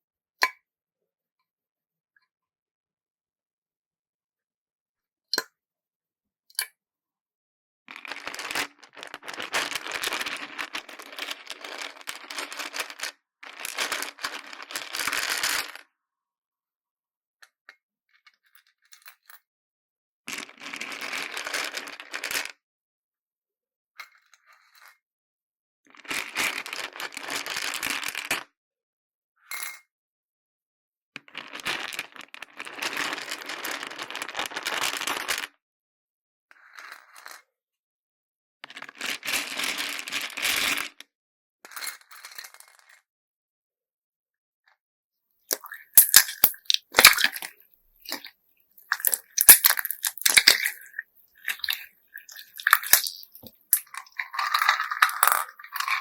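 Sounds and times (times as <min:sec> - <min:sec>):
beads clicking and clattering: 0:08.0 - 0:15.8, 0:45.5 - 0:56.0
slime squeezed by hand: 0:45.5 - 0:56.0.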